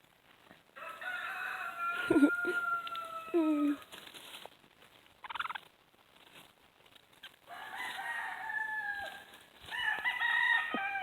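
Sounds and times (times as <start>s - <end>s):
rooster crowing: 0.8s - 3.9s, 7.5s - 11.0s.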